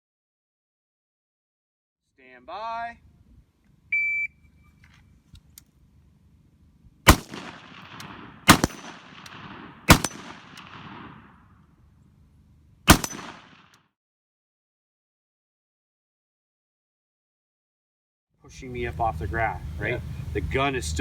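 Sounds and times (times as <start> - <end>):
rifle shots with echo: 7.1 - 11.6, 12.9 - 13.8.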